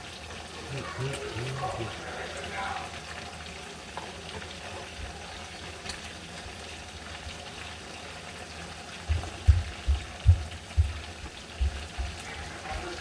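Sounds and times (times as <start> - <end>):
dull low thumps: 9.1 - 12.2.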